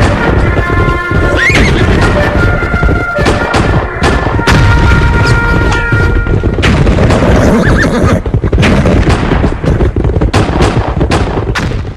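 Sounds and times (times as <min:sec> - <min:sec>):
bugle notes: 0:00.0 - 0:06.6
cannon booms: 0:00.0 - 0:07.4
gunshots: 0:00.0 - 0:11.9
horses galloping: 0:00.0 - 0:11.9.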